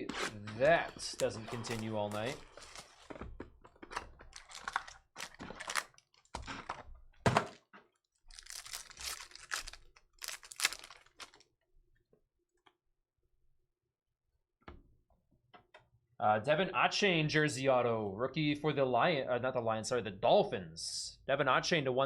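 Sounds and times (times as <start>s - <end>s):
cards being handled: 0.1s - 3.2s, 8.4s - 11.4s
foil wrapper crinkling: 0.8s - 3.2s, 4.2s - 6.8s, 8.2s - 11.4s.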